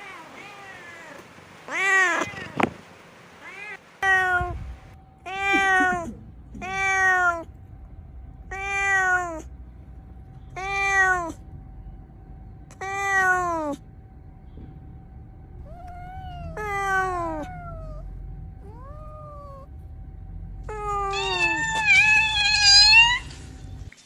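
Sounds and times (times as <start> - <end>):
cat meowing: 0.0 - 2.8, 3.4 - 4.7, 5.3 - 7.5, 8.5 - 9.5, 10.6 - 11.4, 12.7 - 13.8, 15.6 - 19.7, 20.7 - 23.4.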